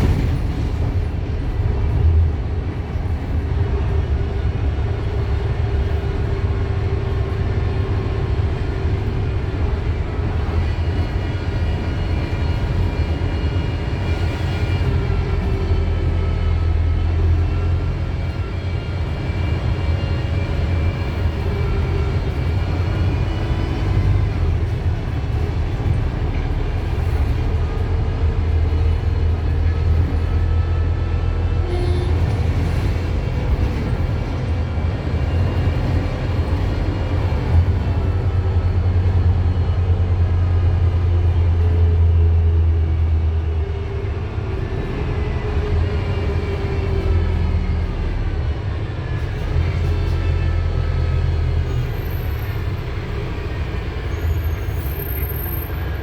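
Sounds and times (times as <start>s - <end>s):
diesel bus engine rumbling: 0.0s - 56.0s.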